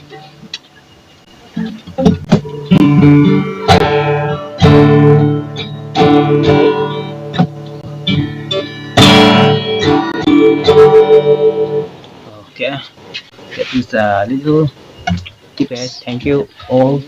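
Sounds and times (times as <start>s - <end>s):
guitar notes plucked: 1.5s - 12.2s
guitar chords strummed: 1.6s - 12.3s.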